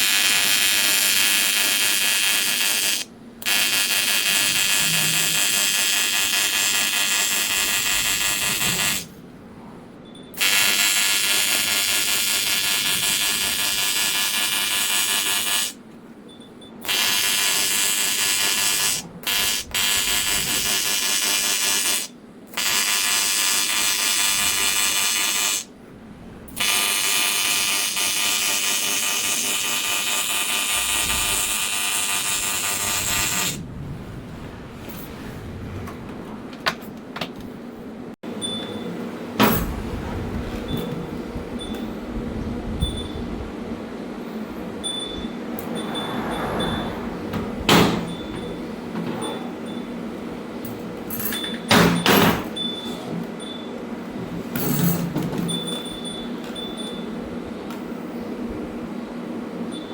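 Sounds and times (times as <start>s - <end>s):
welding arc buzzing: 0.0s - 9.1s, 10.4s - 15.8s, 16.8s - 25.7s, 26.5s - 33.6s.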